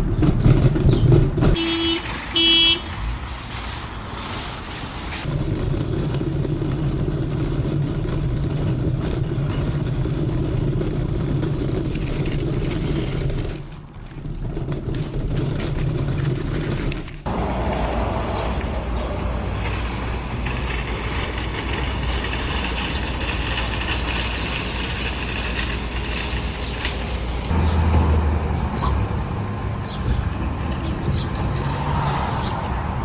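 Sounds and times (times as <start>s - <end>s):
car horn toots: 1.4s - 3.0s.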